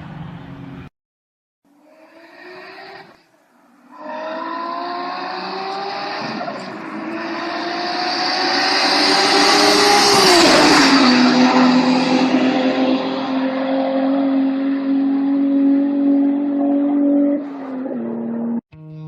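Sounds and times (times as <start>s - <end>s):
car passing by: 3.8s - 17.8s
car engine accelerating: 3.8s - 18.6s.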